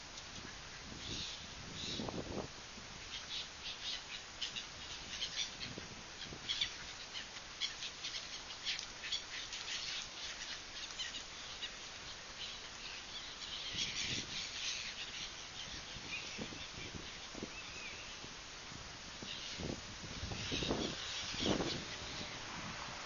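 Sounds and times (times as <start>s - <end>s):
faint background hum: 0.0s - 23.0s
birds chirping: 3.0s - 18.5s, 19.2s - 22.9s.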